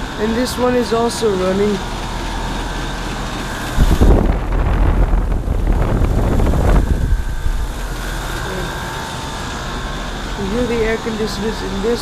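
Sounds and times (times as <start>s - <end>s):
air-conditioning unit humming: 0.0s - 12.0s
wind buffeting microphone: 2.1s - 11.2s.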